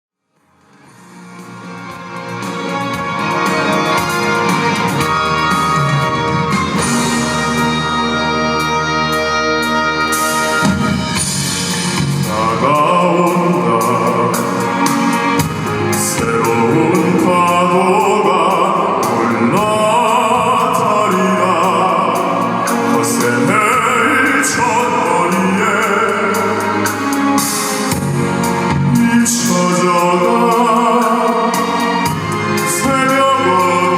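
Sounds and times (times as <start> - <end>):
band and orchestra with drums: 0.6 - 33.9
operatic voices singing: 12.2 - 27.0, 28.8 - 33.9.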